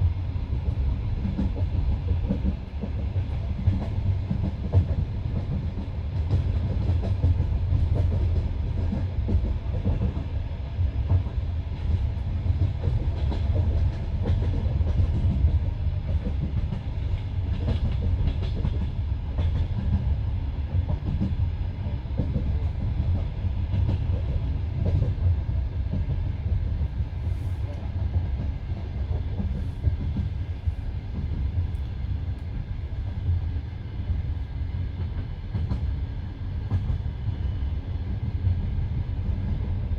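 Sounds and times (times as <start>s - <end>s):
low rumble of train wheels: 0.0s - 39.9s.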